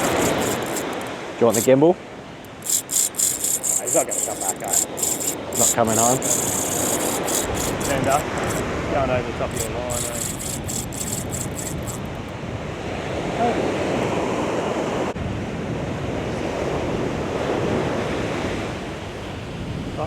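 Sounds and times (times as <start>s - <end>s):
quick ticks: 0.0s - 1.7s, 2.5s - 8.6s, 9.5s - 12.3s.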